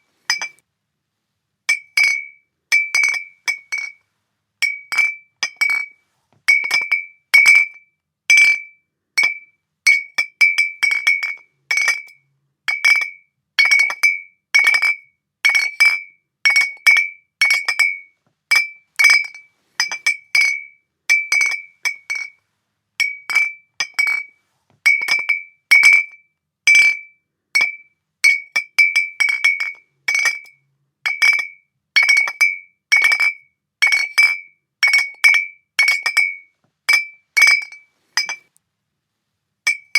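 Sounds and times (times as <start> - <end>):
glass bottles clinking: 0.3 - 0.6, 1.7 - 4.0, 4.6 - 5.9, 6.5 - 7.7, 16.5 - 22.4, 23.0 - 24.3, 24.9 - 26.1, 27.6 - 30.5, 31.1 - 38.5, 39.7 - 39.9.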